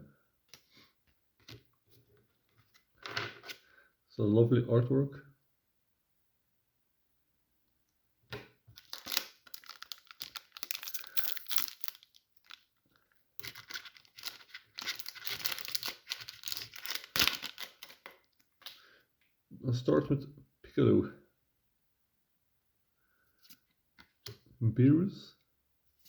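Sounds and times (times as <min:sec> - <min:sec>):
foil wrapper tearing and crinkling: 0:08.7 - 0:12.7, 0:13.4 - 0:18.8.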